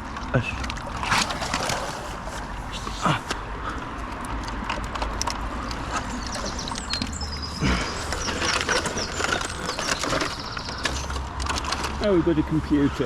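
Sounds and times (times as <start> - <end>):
outdoor background noise: 0.0 - 13.0
small birds chirping: 1.1 - 3.4, 5.6 - 11.3.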